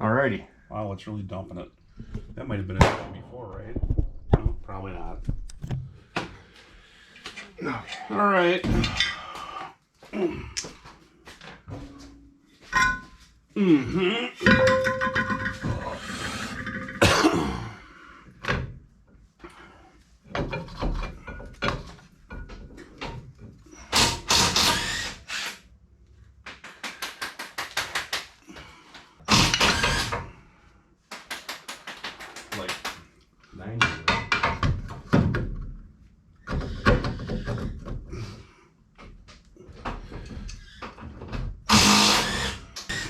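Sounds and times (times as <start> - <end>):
hand tools clanking on metal: 14.4 - 15.9.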